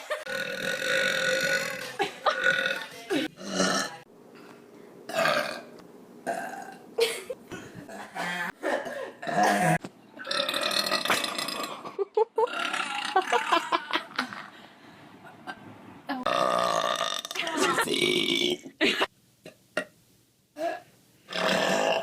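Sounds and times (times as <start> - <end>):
person burping: 0.3 - 4.0, 5.1 - 5.7, 6.3 - 6.8, 8.8 - 13.6, 16.3 - 18.7, 20.6 - 22.0.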